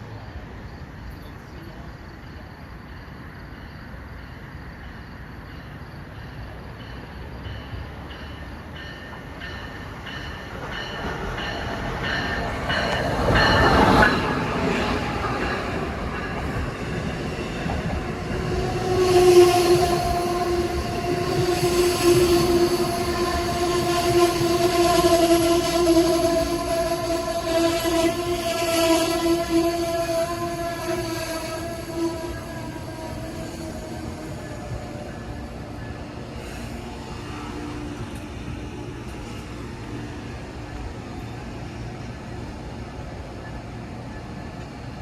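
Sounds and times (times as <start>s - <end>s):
train rumbling past: 0.0s - 45.0s
train horn chord: 18.6s - 33.9s.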